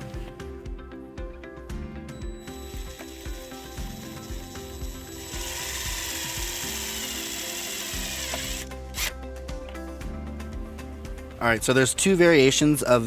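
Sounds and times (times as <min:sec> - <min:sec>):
power drill driving screw: 0:02.4 - 0:09.2.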